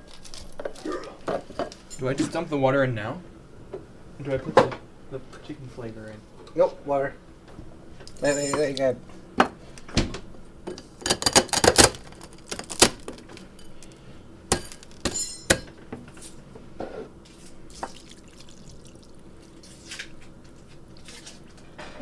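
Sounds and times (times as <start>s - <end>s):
dishware clinking: 8.2s - 8.8s, 14.6s - 15.7s
water splashing into a bowl: 17.7s - 19.2s.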